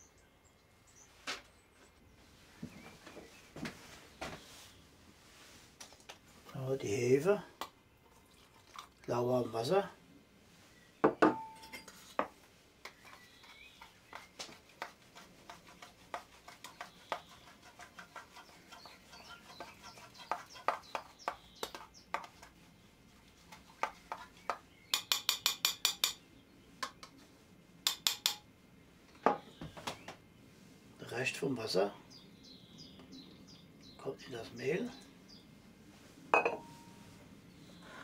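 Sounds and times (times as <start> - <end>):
spoon clinking against a cup: 25.0 - 26.2, 27.9 - 28.4, 36.4 - 36.7.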